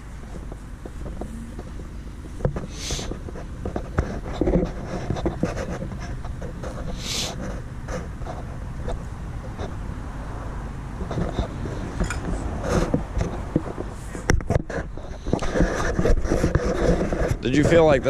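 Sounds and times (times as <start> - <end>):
backhoe engine running: 0.0 - 17.1
short hisses: 2.6 - 3.1.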